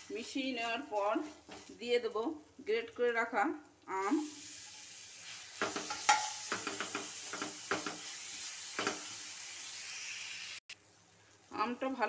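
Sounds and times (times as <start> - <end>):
food sizzling in hot oil: 0.0 - 12.0
spatula scraping and knocking pan: 5.6 - 9.2.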